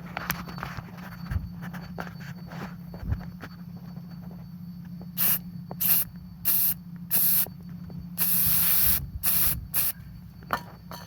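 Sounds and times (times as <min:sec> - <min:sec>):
aerosol spray can hissing: 0:05.2 - 0:07.5, 0:08.2 - 0:09.9.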